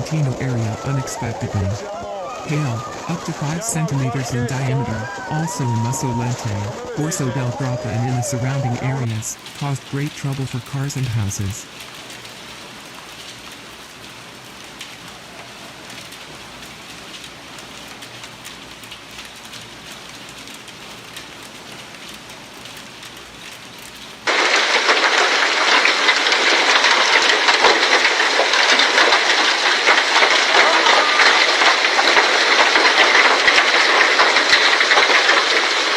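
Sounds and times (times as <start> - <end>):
dense clatter of hailstones: 0.0 - 35.9
hailstones pelting down: 0.0 - 35.9.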